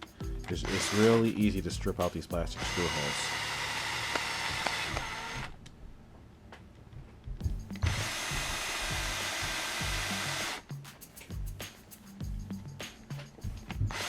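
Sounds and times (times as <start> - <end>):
power drill driving a screw: 0.6 - 1.4, 2.6 - 5.6, 7.8 - 10.6.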